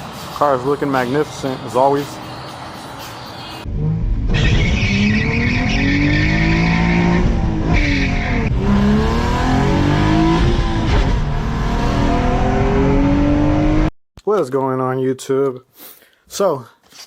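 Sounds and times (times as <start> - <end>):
car engine revving hard: 3.7 - 13.9.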